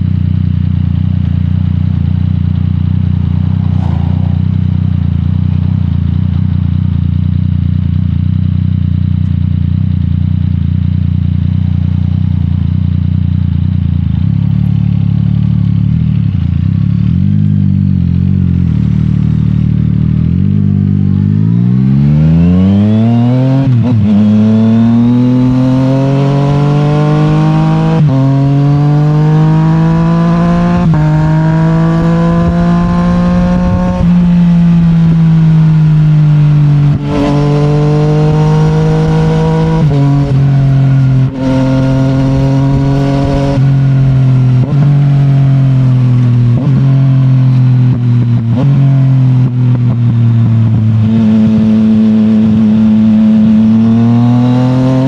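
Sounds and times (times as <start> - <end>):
motorcycle engine revving: 0.0 - 55.0
motorcycle upshifts: 3.0 - 6.5, 21.2 - 55.0.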